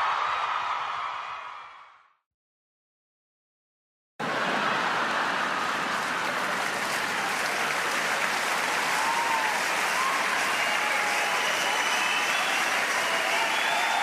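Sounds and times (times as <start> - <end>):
crowd applauding: 4.2 - 14.0.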